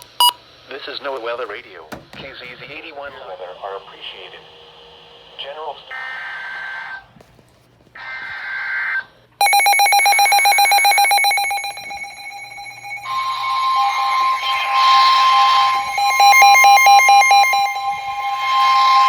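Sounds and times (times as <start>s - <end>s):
pulsing alert tone: 9.4s - 19.0s
screechy digital data bursts: 9.4s - 19.0s
higher tone with static hiss: 11.0s - 19.0s.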